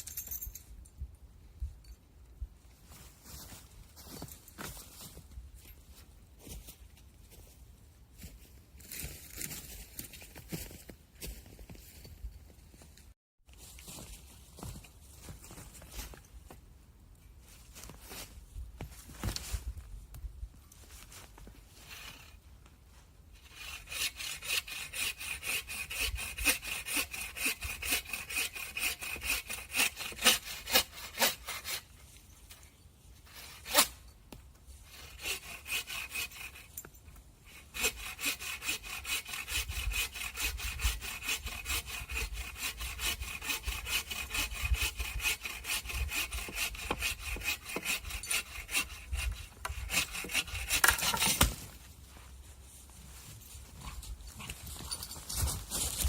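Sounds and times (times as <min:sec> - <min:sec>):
hand saw cutting wood: 0:21.8 - 0:22.4, 0:23.4 - 0:32.0, 0:33.3 - 0:34.0, 0:34.8 - 0:51.7.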